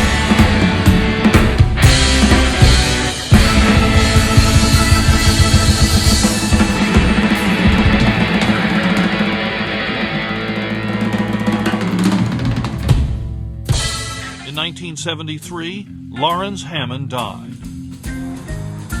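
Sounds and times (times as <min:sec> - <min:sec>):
electric guitar: 0:00.0 - 0:14.7
drums and cymbals: 0:00.0 - 0:14.8, 0:17.5 - 0:19.0
live rock band playing: 0:00.0 - 0:16.6, 0:17.2 - 0:19.0
hammond organ: 0:00.0 - 0:19.0.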